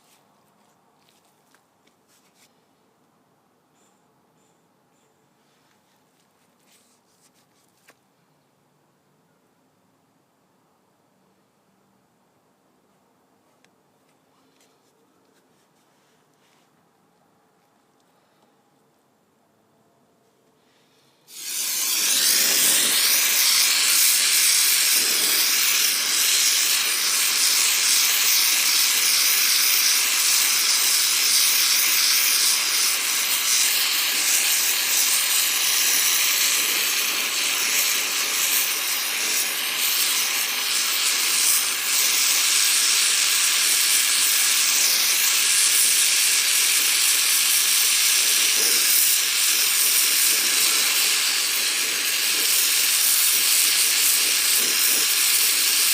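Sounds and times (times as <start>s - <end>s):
torch flame hissing: 21.2s - 55.9s.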